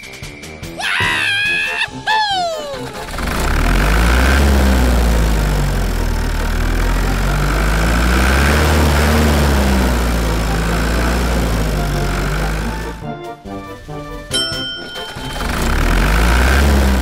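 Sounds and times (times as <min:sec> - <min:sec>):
motor humming: 0:02.7 - 0:13.0, 0:15.1 - 0:17.0.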